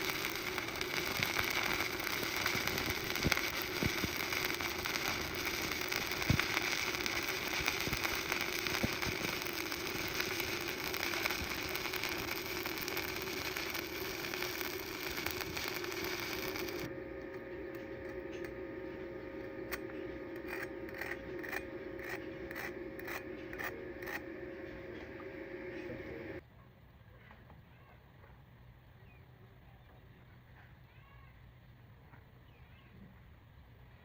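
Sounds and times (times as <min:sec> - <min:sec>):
arc welding crackling and hissing: 0:00.0 - 0:26.4
faint steady hum: 0:00.0 - 0:27.1.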